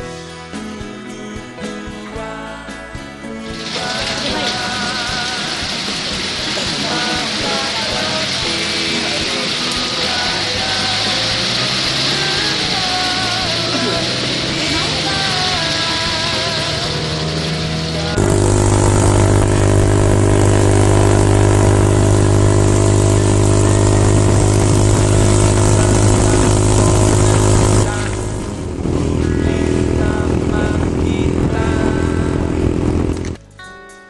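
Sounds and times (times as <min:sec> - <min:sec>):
motorcycle engine running: 0:03.5 - 0:33.5.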